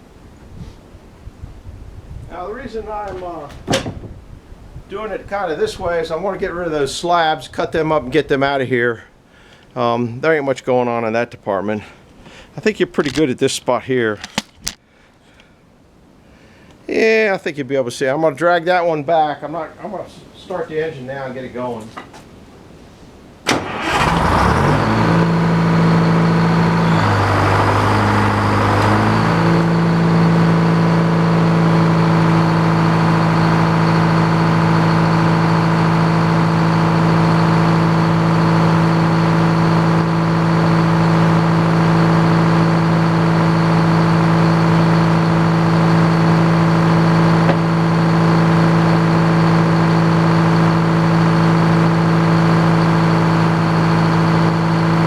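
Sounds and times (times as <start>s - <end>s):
sawmill engine starting: 23.5s - 55.0s.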